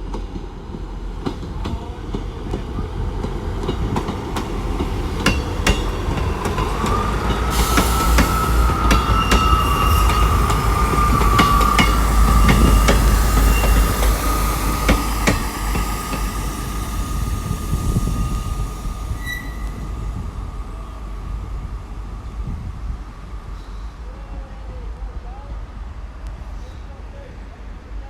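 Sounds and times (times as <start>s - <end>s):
diesel train passing: 0.0s - 28.0s
high-pitched wheel squeal: 16.8s - 20.2s.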